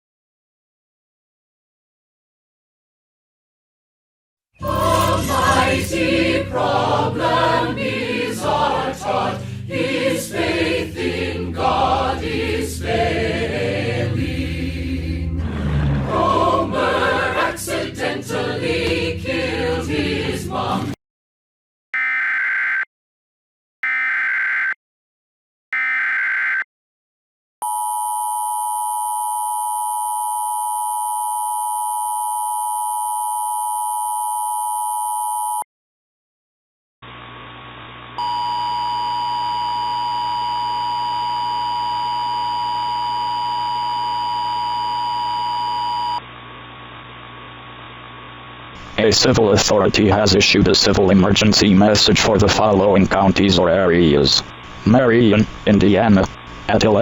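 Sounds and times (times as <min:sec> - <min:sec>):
two-tone attention signal: 0:04.6 - 0:05.8, 0:38.2 - 0:46.2
data tone bursts: 0:04.6 - 0:05.9, 0:38.2 - 0:46.2
hum with static: 0:04.6 - 0:20.9, 0:37.0 - 0:57.0.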